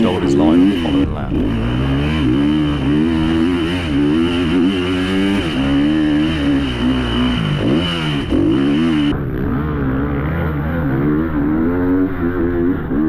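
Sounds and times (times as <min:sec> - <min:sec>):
motocross bike engine revving: 0:00.0 - 0:09.1.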